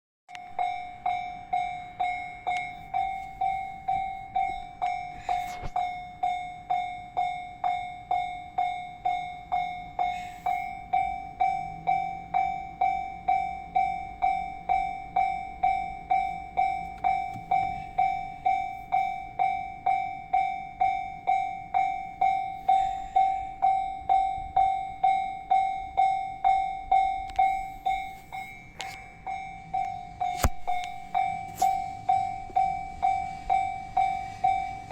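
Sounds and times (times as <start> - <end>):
level crossing warning bell: 0.3 - 34.9.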